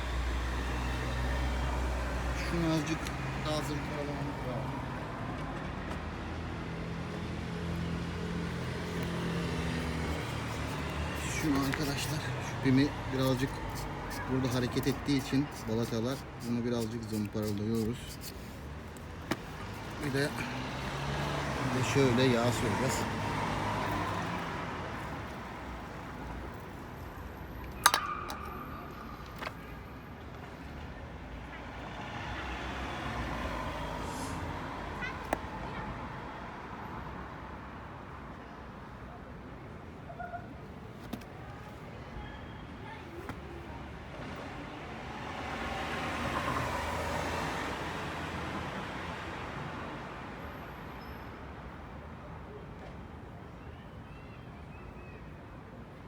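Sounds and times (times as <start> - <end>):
distant traffic hum: 0.0 - 51.9
vehicle passing by: 0.2 - 16.6, 17.2 - 26.4, 31.8 - 36.2.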